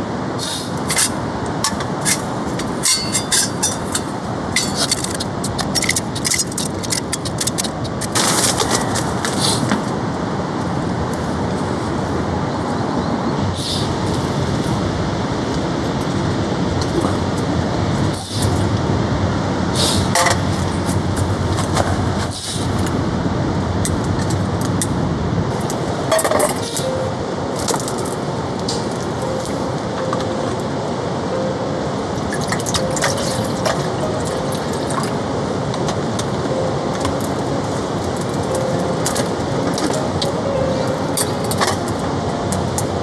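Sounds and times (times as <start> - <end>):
camp cookware clinking: 0.9 - 9.4, 31.8 - 43.0.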